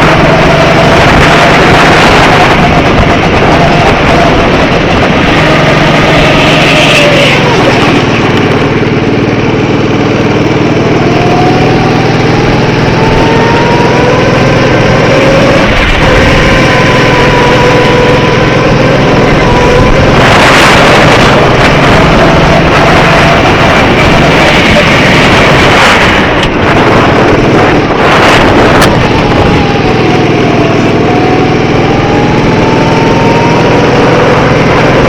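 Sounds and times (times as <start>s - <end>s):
go-kart engine racing: 0.0s - 35.0s.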